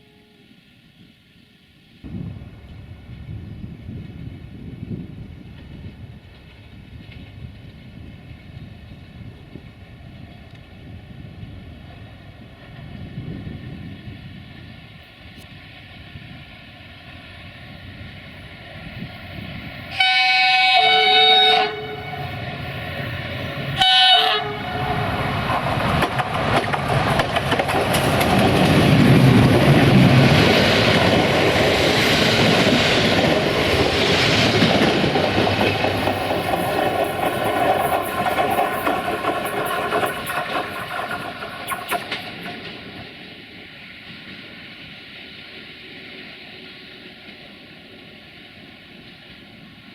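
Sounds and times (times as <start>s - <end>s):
train horn blasts: 0.0s - 0.6s, 19.9s - 22.4s, 23.8s - 25.3s
train wheels clacking: 21.6s - 43.5s.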